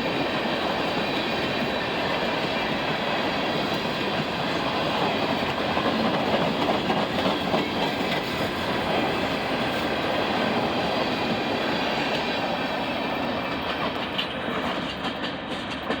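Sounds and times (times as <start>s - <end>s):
freight train rumbling past: 0.0s - 16.0s.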